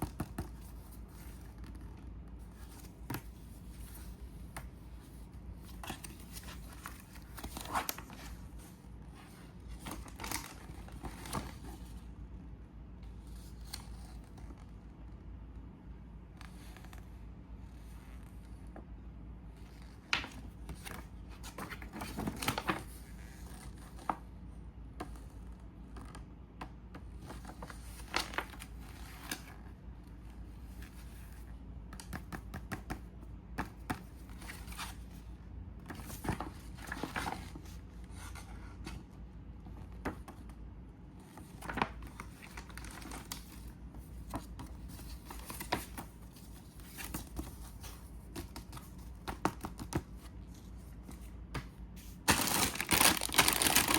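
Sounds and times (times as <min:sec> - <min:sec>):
plastic packaging crinkling: 0:52.2 - 0:53.9.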